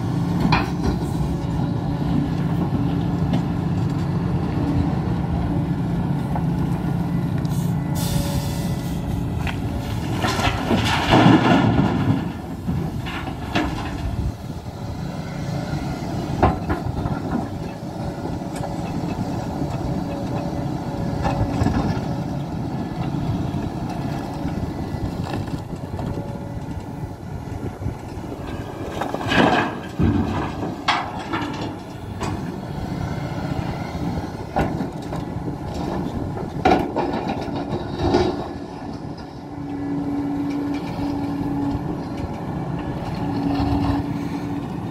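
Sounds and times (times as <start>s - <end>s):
excavator diesel engine under load: 0.0s - 44.9s
rocks dropping into dump truck: 9.9s - 14.3s, 28.9s - 32.4s.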